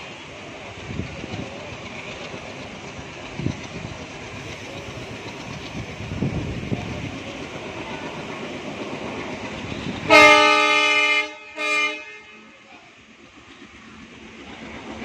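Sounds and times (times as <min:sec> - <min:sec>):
train rumbling and clattering: 0:00.0 - 0:15.0
locomotive horn blasts: 0:10.1 - 0:12.5.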